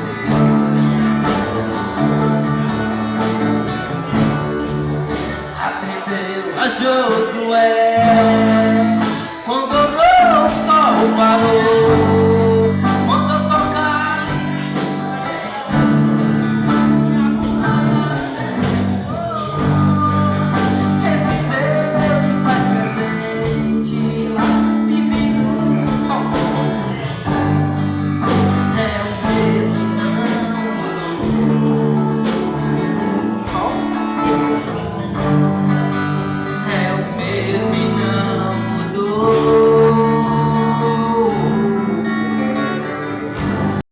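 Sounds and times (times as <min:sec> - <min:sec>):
band playing gospel song: 0:00.0 - 0:43.8
people singing: 0:00.0 - 0:43.8.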